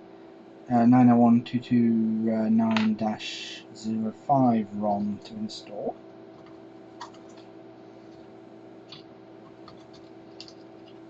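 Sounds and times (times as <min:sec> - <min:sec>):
low electrical hum: 0:00.0 - 0:11.0
clicks and scratches of small parts: 0:06.4 - 0:07.5, 0:08.9 - 0:11.0.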